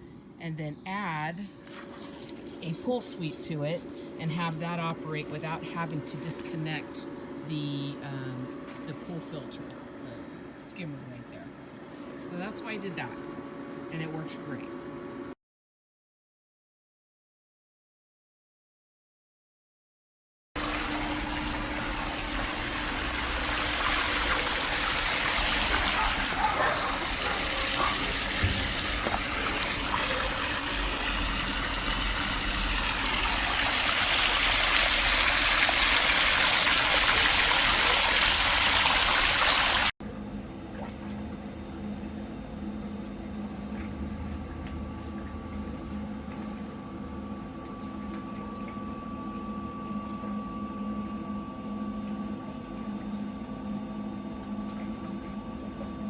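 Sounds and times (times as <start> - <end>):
steady hum: 0.0 - 15.4, 20.6 - 56.0
pool water rushing and splashing: 20.6 - 39.9.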